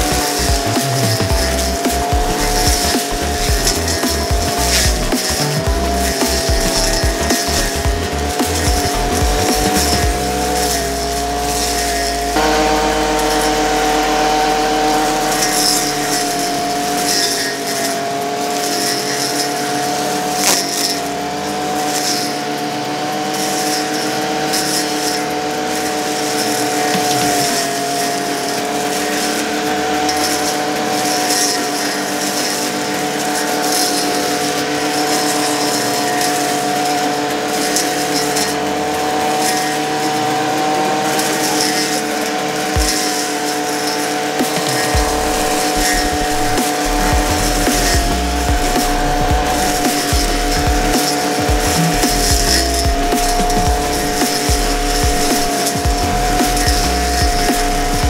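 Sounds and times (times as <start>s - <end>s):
brush cutter engine running: 0.0s - 58.0s.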